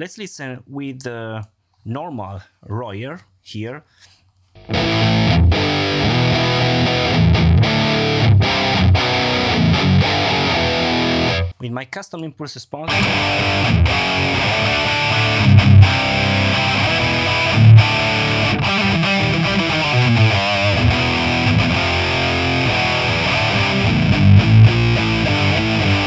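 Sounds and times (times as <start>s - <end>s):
distorted electric guitar: 4.6s - 11.5s, 12.9s - 26.0s.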